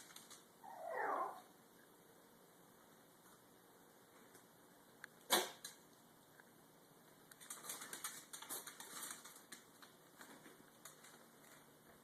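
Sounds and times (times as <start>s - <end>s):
pet sneezing: 5.3s - 5.6s
light clicks and rustling: 7.3s - 11.7s.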